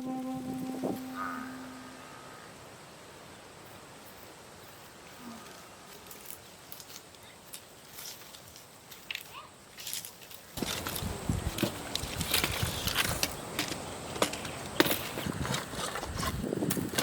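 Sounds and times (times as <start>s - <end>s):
held music tone: 0.0s - 2.3s
light clicks and rustles: 5.5s - 17.0s.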